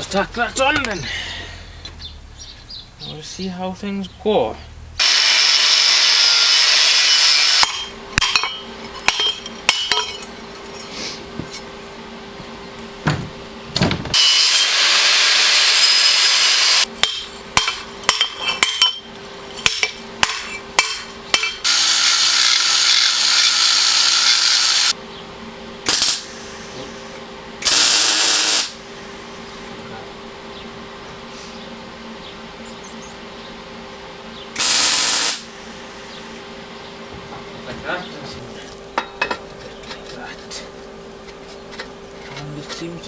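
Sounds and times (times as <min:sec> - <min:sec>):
welder crackling hiss: 0:14.1 - 0:16.9, 0:21.6 - 0:25.0, 0:25.8 - 0:29.7, 0:34.6 - 0:36.4.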